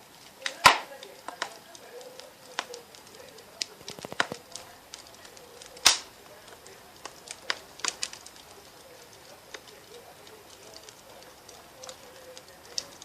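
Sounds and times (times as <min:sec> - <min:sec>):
light clicks and crackles: 0:00.0 - 0:13.0
loud sharp snap: 0:00.4 - 0:00.9, 0:05.8 - 0:06.1.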